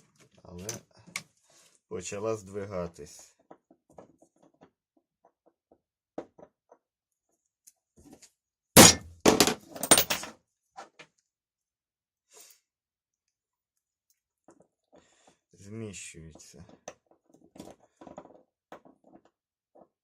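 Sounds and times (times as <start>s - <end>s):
hammer striking metal punch: 8.8s - 9.4s.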